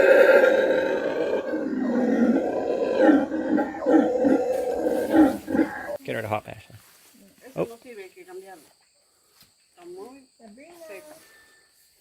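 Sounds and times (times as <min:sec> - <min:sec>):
howler monkeys howling: 0:00.0 - 0:06.0.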